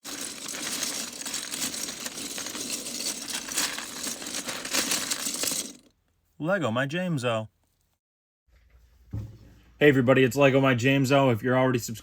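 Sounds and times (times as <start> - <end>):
small plastic pieces clattering: 0.0 - 5.9.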